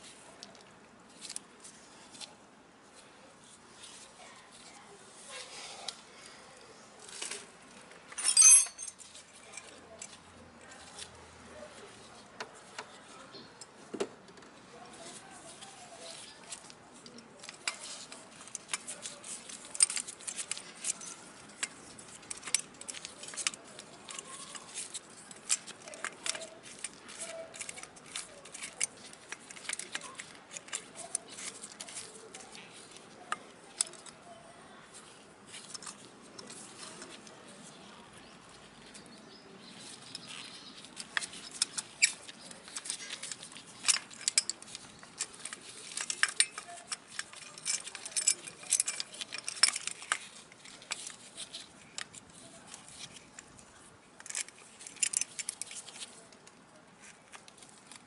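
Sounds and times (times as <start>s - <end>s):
hand tools clicking and clinking: 8.1s - 10.2s, 15.6s - 34.3s, 35.0s - 37.6s, 38.8s - 53.6s, 54.2s - 58.0s.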